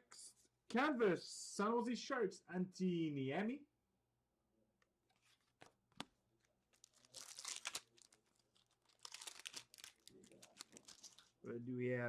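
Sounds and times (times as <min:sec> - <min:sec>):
foil wrappers crinkling: 0:06.7 - 0:11.4.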